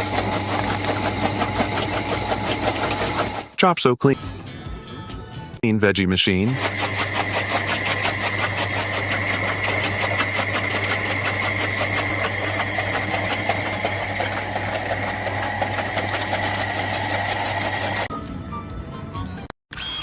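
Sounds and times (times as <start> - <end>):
low motor hum: 0.0 - 3.5, 6.5 - 18.1
vegetable chopping machine blade: 0.0 - 3.6, 6.4 - 18.1.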